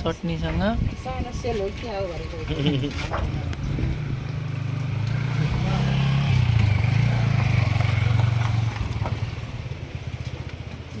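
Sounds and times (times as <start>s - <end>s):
vehicle engine running: 0.8s - 11.0s.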